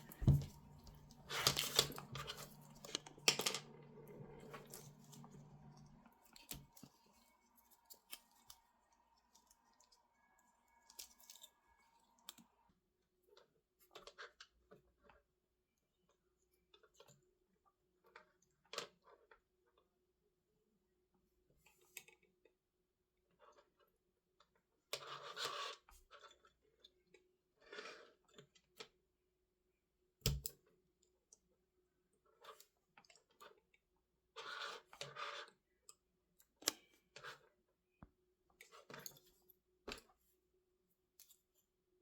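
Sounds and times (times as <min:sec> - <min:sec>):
small tools clicking and tapping: 0:00.0 - 0:03.6
faint steady hum: 0:00.0 - 0:12.4.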